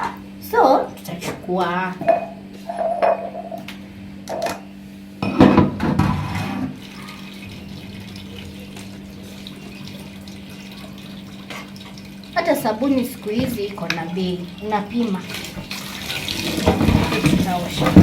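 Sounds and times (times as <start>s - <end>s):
steady low hum: 0.0s - 18.0s
tap water running into sink: 6.8s - 18.0s.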